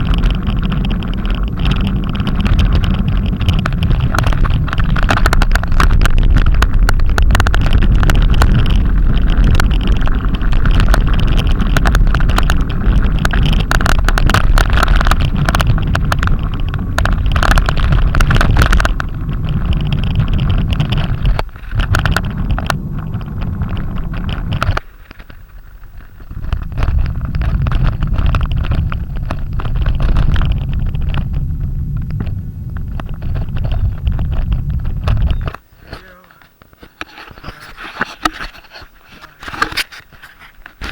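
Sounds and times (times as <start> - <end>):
wind buffeting microphone: 0.0 - 40.9.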